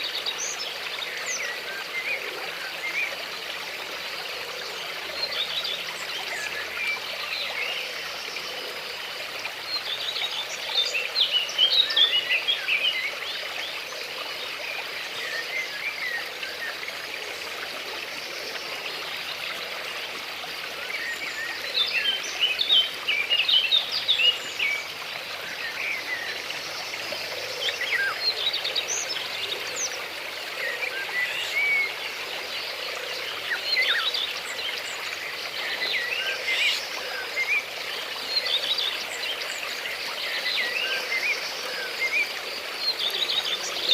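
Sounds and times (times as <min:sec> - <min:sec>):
stream flowing: 0:00.0 - 0:43.9.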